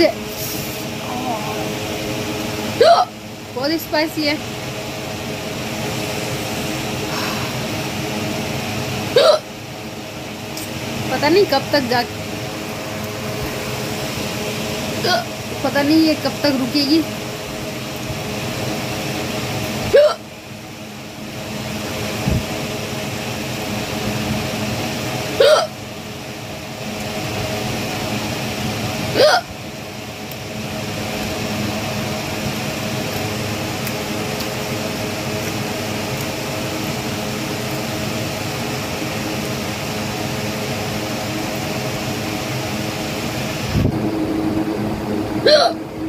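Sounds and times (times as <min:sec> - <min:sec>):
steady mechanical hum: 0:00.0 - 0:46.0
woman hiccupping: 0:02.8 - 0:03.2, 0:09.2 - 0:09.5, 0:15.0 - 0:15.3, 0:20.0 - 0:20.3, 0:25.4 - 0:25.8, 0:29.2 - 0:29.5, 0:45.4 - 0:45.8.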